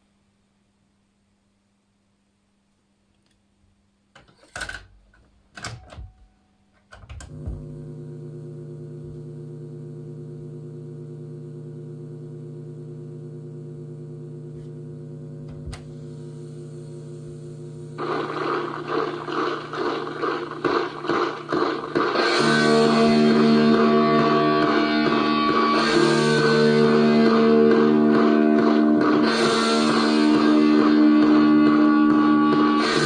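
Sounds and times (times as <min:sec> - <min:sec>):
steady low hum: 0:07.2 - 0:29.2.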